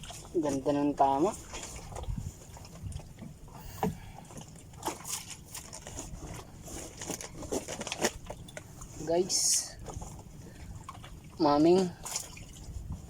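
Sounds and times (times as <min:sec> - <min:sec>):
wind and water rushing: 0:01.3 - 0:05.3.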